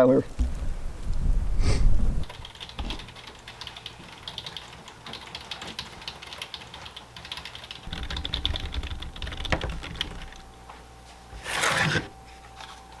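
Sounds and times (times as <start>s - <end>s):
low steady hum: 7.6s - 13.0s.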